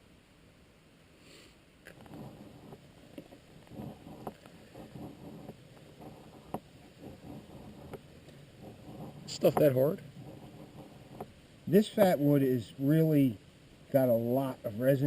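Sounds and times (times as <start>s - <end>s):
knife scraping wood: 1.9s - 11.4s.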